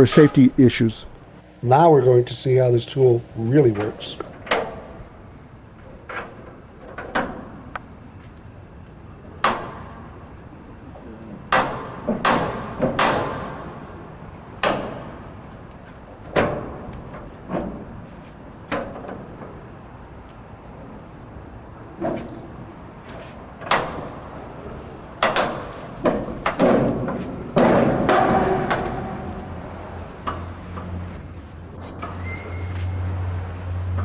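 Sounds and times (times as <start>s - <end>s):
metal door bars clanking: 3.7s - 5.1s, 5.8s - 7.7s, 11.5s - 15.4s, 16.2s - 18.0s, 23.6s - 24.6s, 25.2s - 31.2s.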